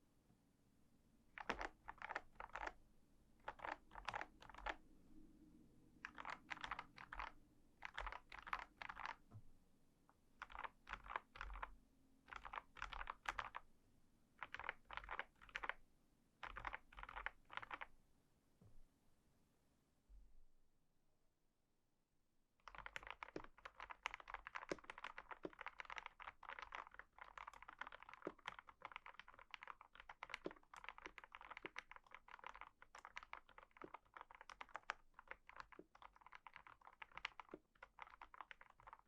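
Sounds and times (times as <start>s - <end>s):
mechanical keyboard typing: 1.4s - 2.8s, 3.4s - 4.8s, 6.0s - 9.2s, 10.4s - 11.7s, 12.3s - 13.6s, 14.4s - 15.8s, 16.4s - 17.9s, 22.6s - 39.0s.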